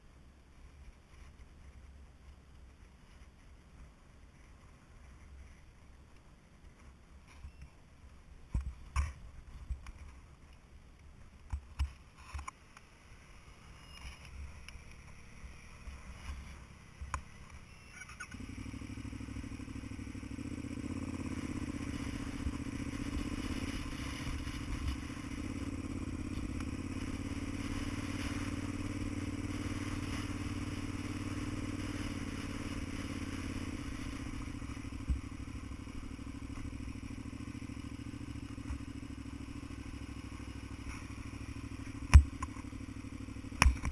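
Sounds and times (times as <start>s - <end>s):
vehicle engine running: 0.4s - 43.9s
faint clicks and knocks: 8.4s - 12.9s.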